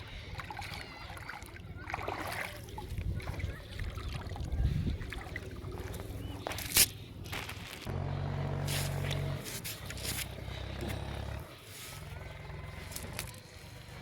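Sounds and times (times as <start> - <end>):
water sloshing and trickling: 0.0 - 7.8.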